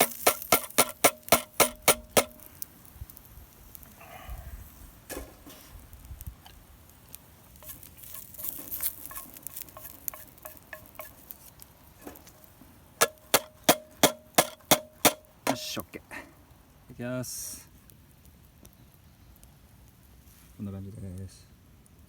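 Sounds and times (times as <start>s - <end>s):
utensil tapping metal pot: 0.0s - 2.5s, 7.6s - 11.4s, 13.0s - 15.8s
camp cookware rustling: 0.0s - 3.2s, 3.8s - 15.9s.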